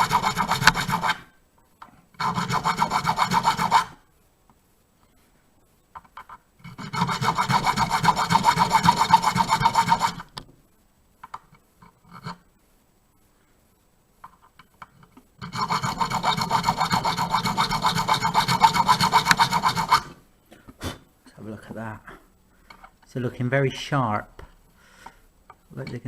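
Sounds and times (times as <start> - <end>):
hand file rasping on key: 0.0 - 1.3, 2.2 - 4.0, 6.6 - 10.3, 15.4 - 20.2.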